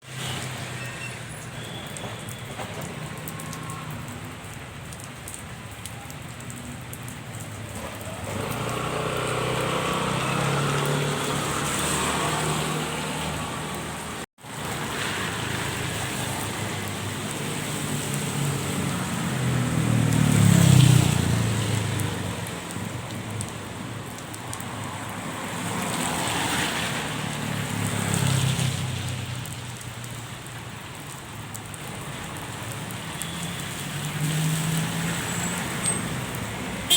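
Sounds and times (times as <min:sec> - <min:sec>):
steady rain: 0:00.0 - 0:36.9
vehicles passing: 0:00.0 - 0:36.9.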